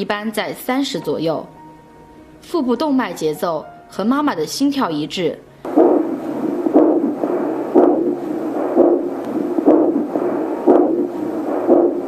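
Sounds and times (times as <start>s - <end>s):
doppler pulse beat: 5.7s - 12.0s.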